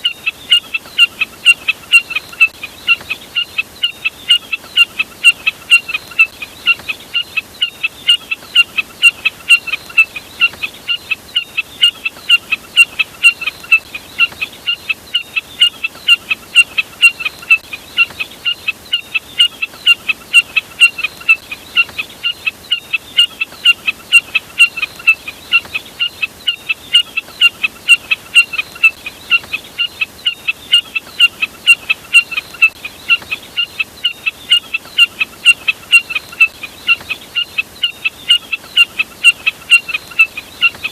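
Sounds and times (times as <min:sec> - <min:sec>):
snipe calling: 0:00.0 - 0:40.9.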